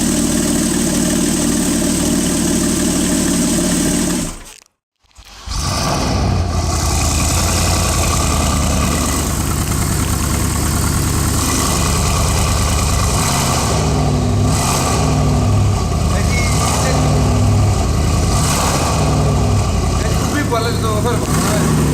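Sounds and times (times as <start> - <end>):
car engine idling: 0.0 - 4.4, 5.5 - 21.9.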